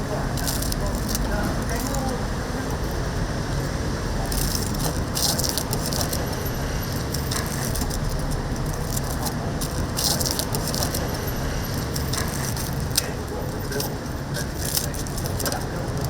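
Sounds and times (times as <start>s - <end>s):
rattling clatters: 0.3s - 16.0s.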